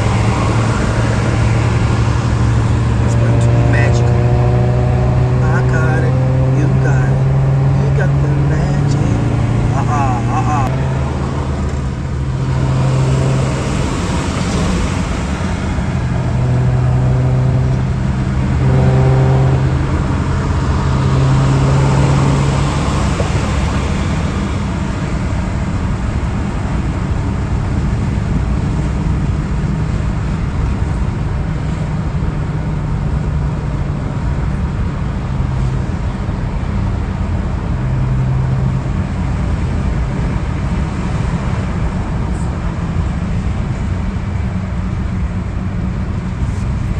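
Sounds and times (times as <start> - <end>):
car engine running: 0.0 - 46.9.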